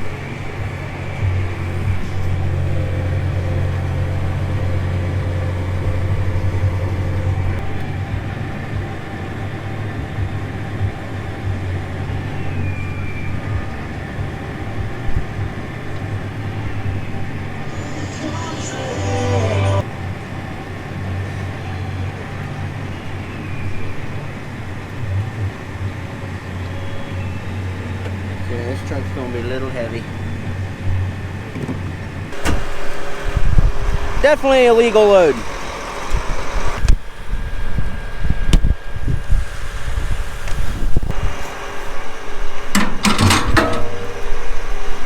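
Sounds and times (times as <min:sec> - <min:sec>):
machinery engine humming: 0:00.0 - 0:45.0
farm vehicle engine thumping: 0:31.5 - 0:37.0, 0:40.4 - 0:45.0
clattering rattle: 0:42.7 - 0:45.0.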